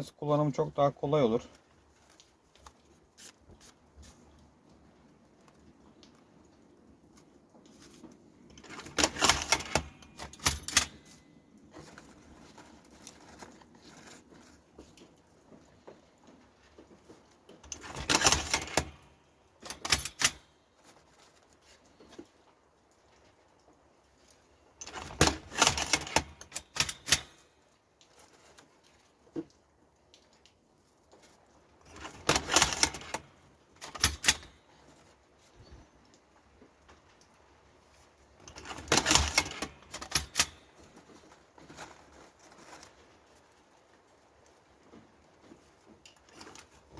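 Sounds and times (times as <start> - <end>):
rolling machine clicking and rattling: 8.4 - 14.5, 17.6 - 20.5, 24.8 - 27.5, 31.9 - 34.6, 38.4 - 41.0.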